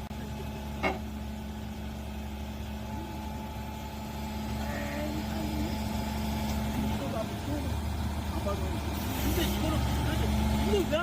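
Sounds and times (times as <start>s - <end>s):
heavy machinery engine humming: 0.0s - 11.0s.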